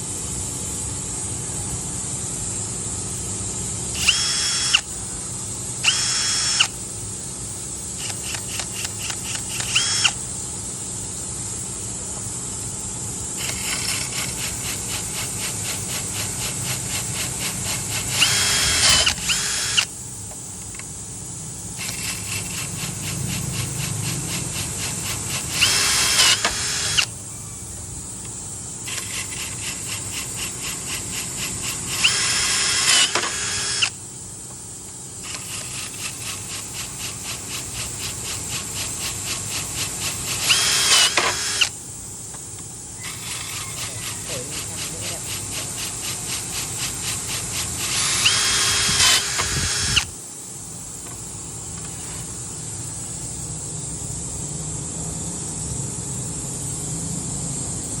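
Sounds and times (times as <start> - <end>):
high-pitched drill squeal: 4.0 - 4.9, 5.8 - 6.8, 8.0 - 10.2, 13.4 - 19.9, 24.6 - 27.1, 28.9 - 34.0, 39.2 - 41.8, 43.0 - 46.0, 46.6 - 50.1
cordless drill pulsing into stone: 4.0 - 5.0, 5.8 - 6.9, 7.5 - 10.4, 13.2 - 27.2, 28.2 - 50.2.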